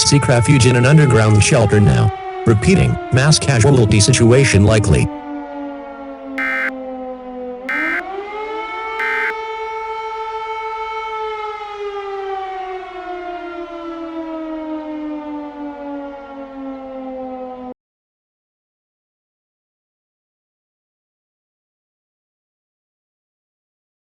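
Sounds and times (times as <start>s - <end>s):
buzzy data signal bursts: 6.4s - 6.7s, 7.7s - 8.0s, 9.0s - 9.3s
civil defense siren wailing: 6.4s - 6.7s, 7.7s - 9.3s, 10.9s - 17.7s.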